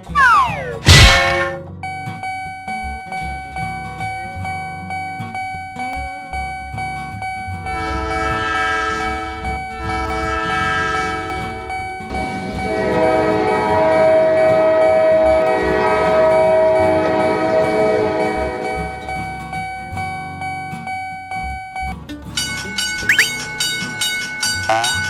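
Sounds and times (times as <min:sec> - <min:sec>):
train horn blasts: 0:07.6 - 0:19.9
low rumble: 0:07.7 - 0:19.8.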